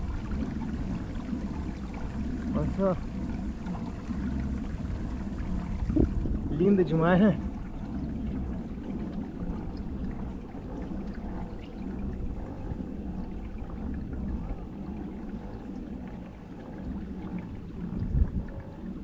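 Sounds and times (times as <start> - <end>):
low rumble: 0.0 - 19.0
water splashing around kayak: 0.0 - 19.0.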